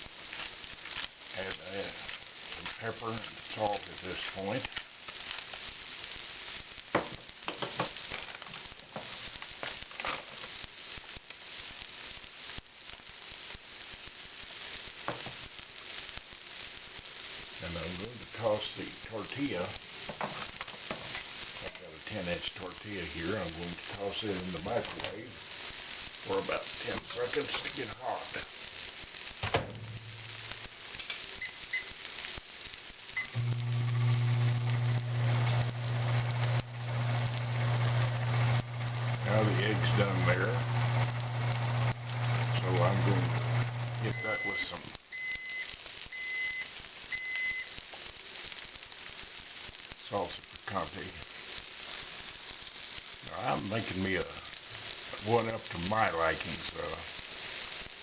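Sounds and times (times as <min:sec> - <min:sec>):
egg sizzling in a pan: 0:00.0 - 0:58.0
microwave oven humming: 0:33.2 - 0:44.2
microwave keypad beeping: 0:44.1 - 0:47.7.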